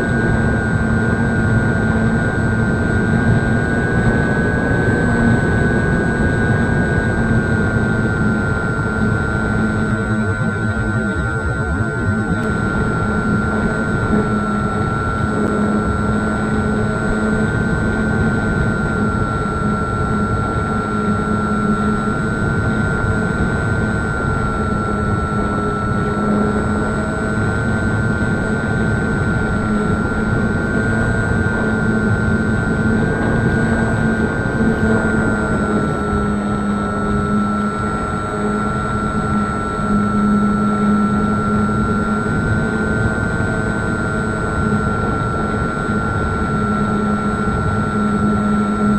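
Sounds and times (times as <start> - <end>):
model plane motor whine: 0.0 - 48.9.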